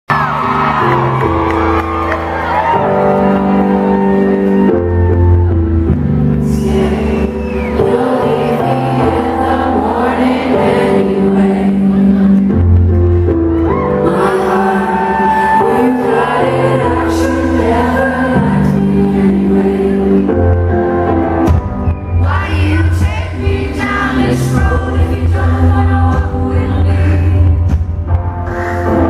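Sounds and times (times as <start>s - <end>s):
person singing: 6.2s - 12.8s, 13.6s - 21.0s.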